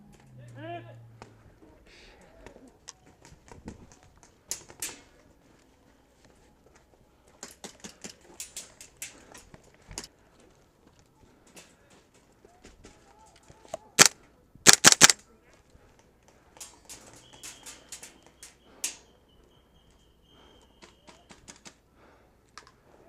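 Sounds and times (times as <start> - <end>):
airsoft gun shots: 14.7 - 15.2.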